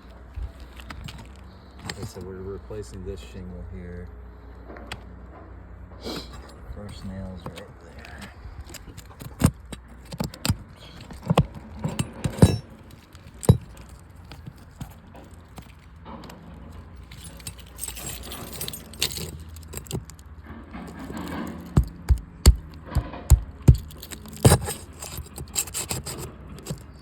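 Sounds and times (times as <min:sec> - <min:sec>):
tool scraping: 0:06.0 - 0:15.8, 0:17.0 - 0:20.1, 0:20.8 - 0:27.0
metal tool clinking on nails: 0:09.0 - 0:15.8, 0:16.9 - 0:27.0.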